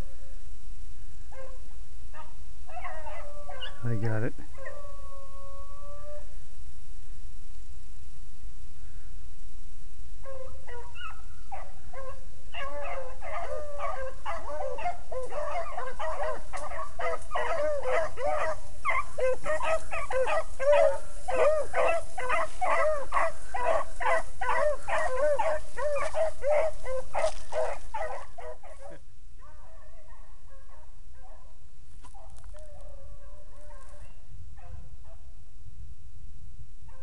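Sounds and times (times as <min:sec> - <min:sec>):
dogs baying: 0:10.3 - 0:31.4.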